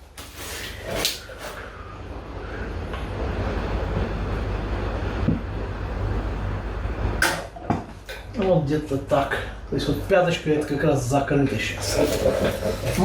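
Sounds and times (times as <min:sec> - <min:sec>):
fluid gurgling as poured: 0:11.8 - 0:13.0.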